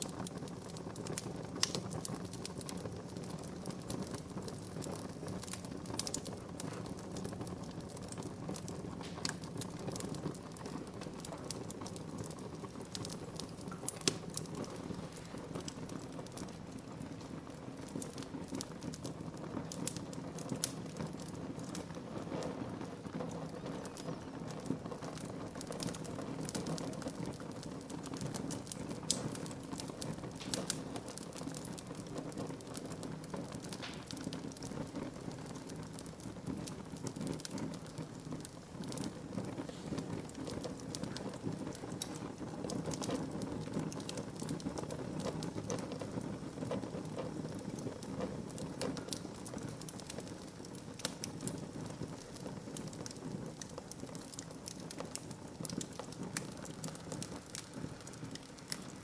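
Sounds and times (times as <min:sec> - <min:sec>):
wood fire crackling and popping: 0:00.0 - 0:59.0.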